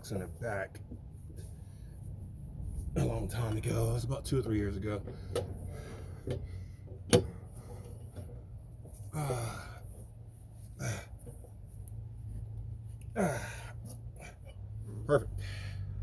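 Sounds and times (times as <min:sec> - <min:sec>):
steady low hum: 0:00.0 - 0:16.0
man grunting: 0:13.2 - 0:14.4.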